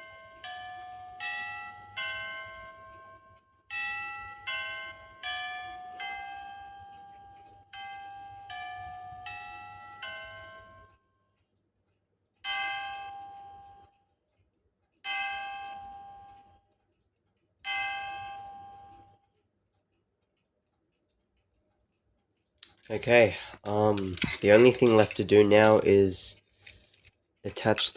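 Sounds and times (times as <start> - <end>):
electronic clock chime: 0.0 - 11.0, 12.4 - 13.9, 15.1 - 16.6, 17.7 - 19.2.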